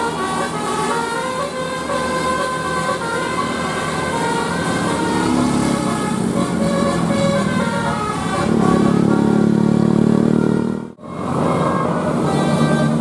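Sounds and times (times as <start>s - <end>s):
engine drone: 0.0s - 13.0s
multi-tone air horn tune: 0.0s - 13.0s.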